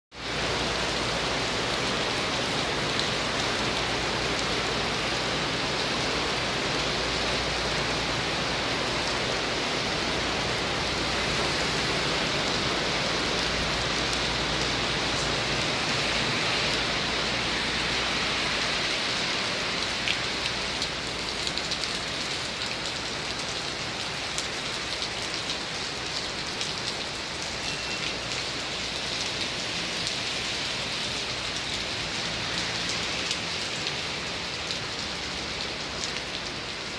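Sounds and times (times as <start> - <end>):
heavy rain pouring: 0.1 - 36.9.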